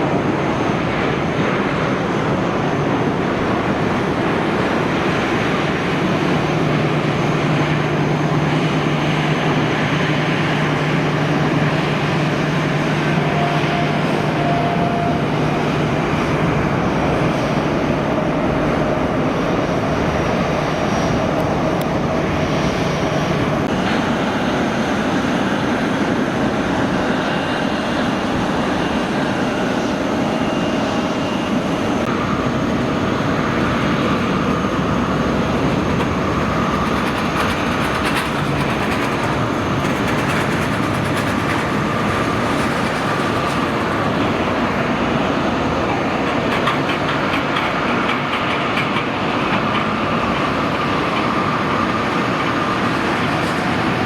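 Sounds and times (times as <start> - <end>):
jet engines rushing: 0.0 - 54.0.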